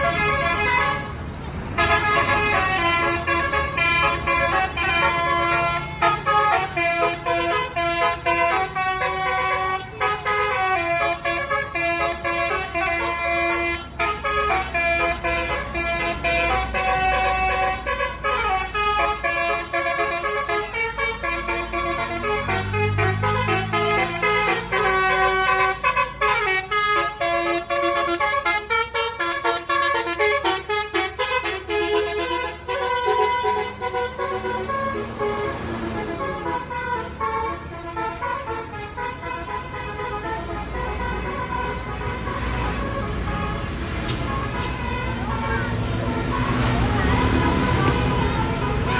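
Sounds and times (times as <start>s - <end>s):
multi-tone bus horn playing a tune: 0.0s - 48.9s.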